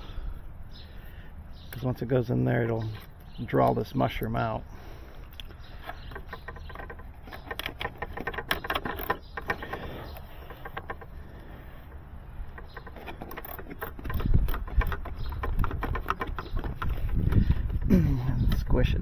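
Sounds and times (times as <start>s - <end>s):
clicks and rustles of handling cable: 5.3s - 18.7s.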